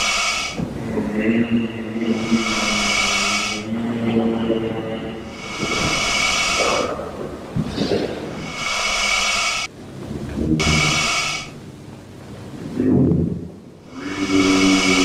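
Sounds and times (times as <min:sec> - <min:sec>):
dinosaur roars and growls: 0:00.0 - 0:09.2, 0:10.2 - 0:11.6, 0:12.8 - 0:15.0.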